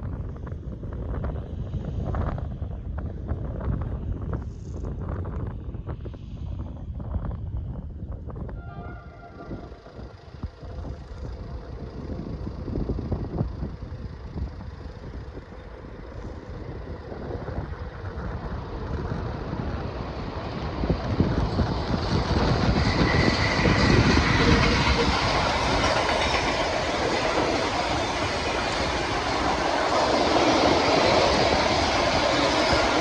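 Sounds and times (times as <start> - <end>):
freight train wheels rumbling: 8.5 - 33.0
faint high wheel squeal: 22.5 - 33.0.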